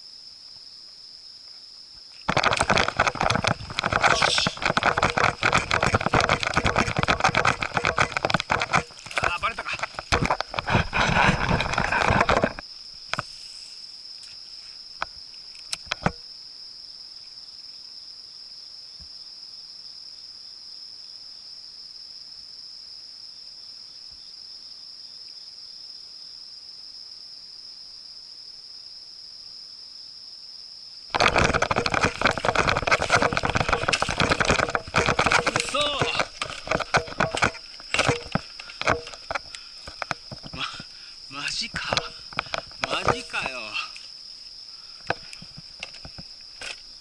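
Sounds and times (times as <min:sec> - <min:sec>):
high-pitched insect drone: 0:00.0 - 0:17.9, 0:31.0 - 0:47.0
sharp clicks: 0:02.2 - 0:10.7
loud rough noise: 0:02.3 - 0:12.6, 0:31.1 - 0:40.3.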